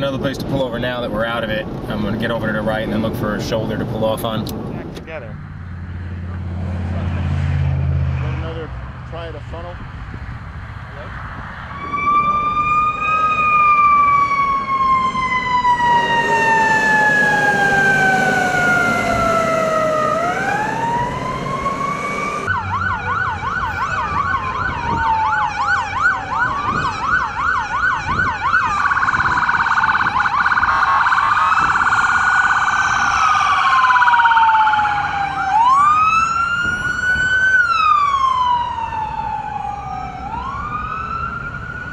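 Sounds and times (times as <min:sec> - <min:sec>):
emergency siren wailing and yelping: 0:11.6 - 0:41.9.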